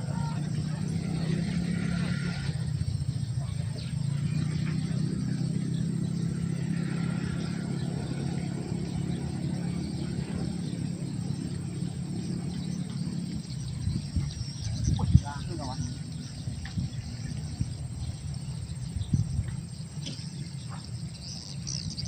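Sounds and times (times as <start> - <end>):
engine humming: 0.0 - 22.0
faint insect chirping: 0.0 - 22.0.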